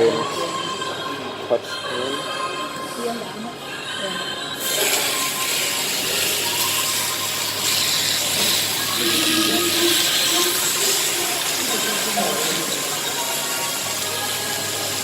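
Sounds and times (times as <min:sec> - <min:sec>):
steak sizzling on hot stone: 0:04.6 - 0:15.0.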